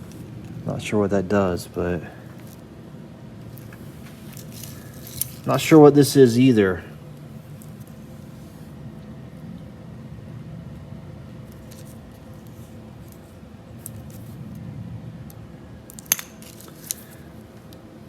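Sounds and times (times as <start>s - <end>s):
steady low hum: 0.0s - 18.0s
metal connectors clicking together: 15.9s - 17.0s.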